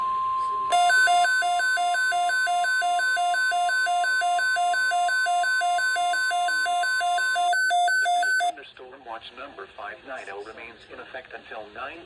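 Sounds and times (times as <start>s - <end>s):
alternating two-note electronic beeping: 0.7s - 8.5s
steady alarm tone: 0.7s - 8.5s.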